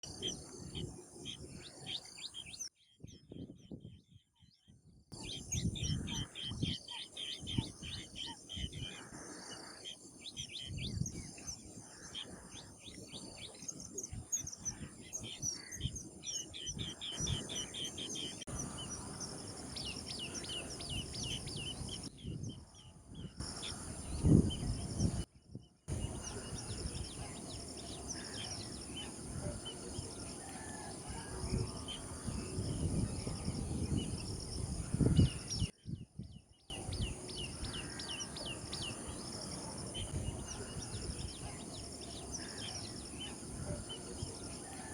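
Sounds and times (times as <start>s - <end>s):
birds chirping: 0.0s - 2.7s, 5.2s - 22.1s, 23.4s - 25.3s, 25.9s - 35.7s, 36.7s - 44.9s
insect buzz: 36.7s - 44.9s.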